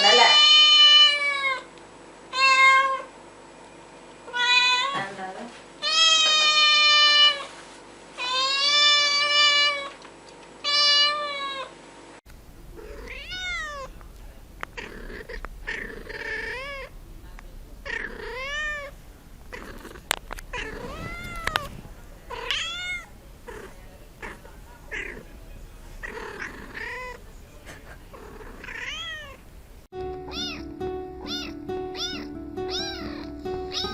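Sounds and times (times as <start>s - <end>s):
cat long loud meows: 12.8s - 13.9s, 28.6s - 29.4s.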